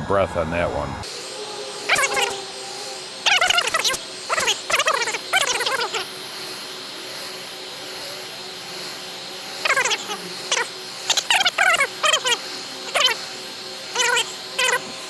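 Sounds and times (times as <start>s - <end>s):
heat gun fan hiss: 1.0s - 15.0s
short pitched animal calls: 1.9s - 2.5s, 3.2s - 6.1s, 9.6s - 14.9s.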